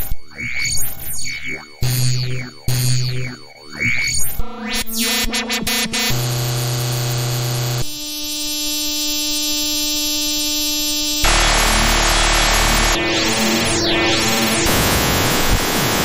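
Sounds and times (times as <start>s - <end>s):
harsh noisy electronic buzz: 0.0s - 16.0s
held buzzy electronic tone: 0.0s - 16.0s
steady held electronic tone: 0.0s - 16.0s
rising and falling pitch sweeps: 11.2s - 16.0s.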